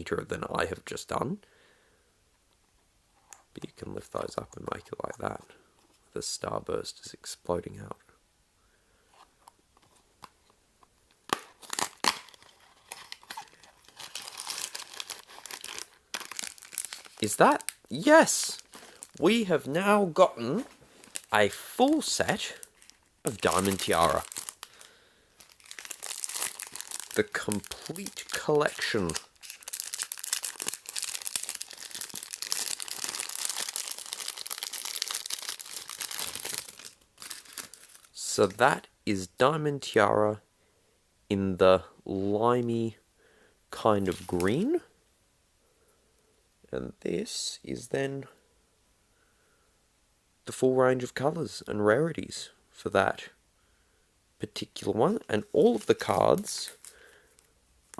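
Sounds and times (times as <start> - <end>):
packaging crinkling: 9.8 - 38.5, 55.5 - 57.5
packaging tearing: 11.2 - 38.1.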